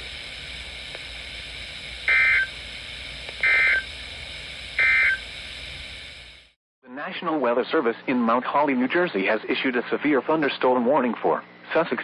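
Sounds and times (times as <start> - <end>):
broadcast hiss and hum: 0.0 - 12.0
digital data tone bursts: 2.0 - 2.6, 3.4 - 4.0, 4.8 - 5.3.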